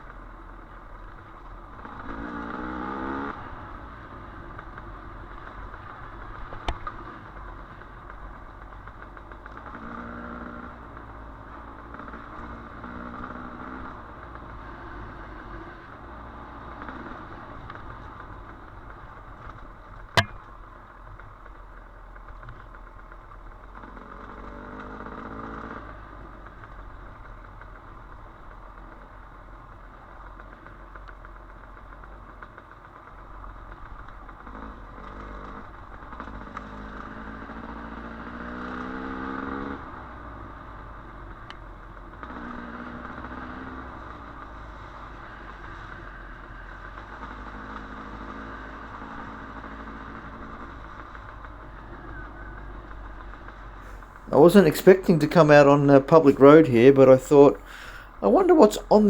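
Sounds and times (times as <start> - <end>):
sharp click: 20.2 - 20.4.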